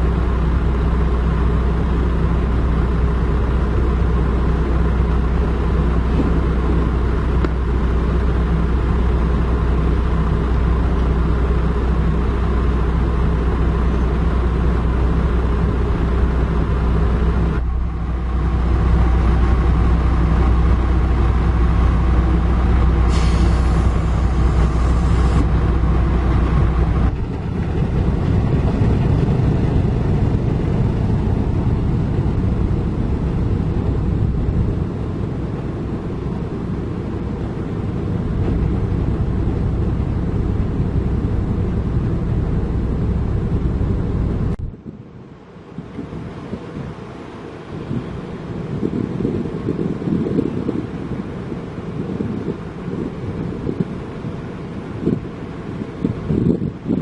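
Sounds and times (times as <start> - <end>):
diesel engine humming: 0.0 - 57.0
hiss: 22.9 - 25.6.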